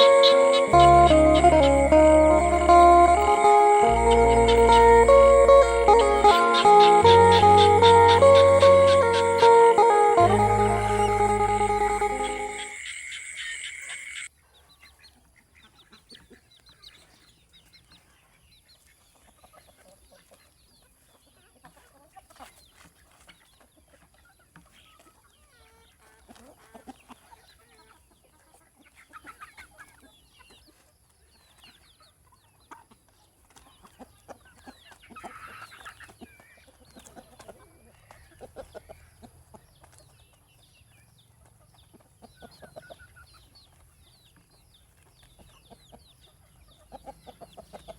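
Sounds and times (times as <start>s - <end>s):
chickens clucking: 0.0s - 12.8s, 33.6s - 40.0s, 45.3s - 47.9s
music: 0.0s - 12.8s.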